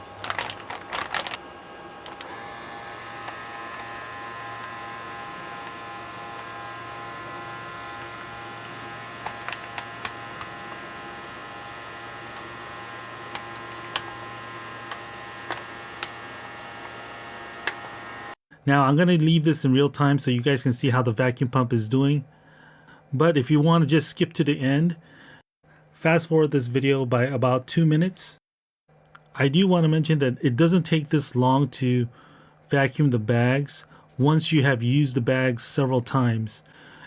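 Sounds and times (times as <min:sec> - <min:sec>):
vacuum pump motor whine: 0:00.0 - 0:18.4.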